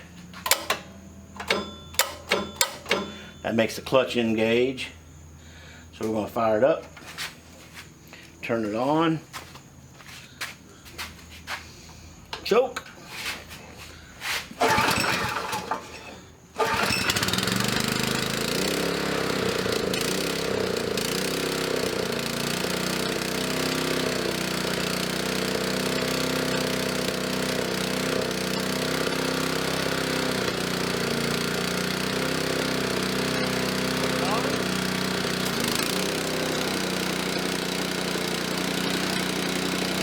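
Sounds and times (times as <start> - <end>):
small gasoline engine starting: 0.4 - 3.5, 14.5 - 40.0.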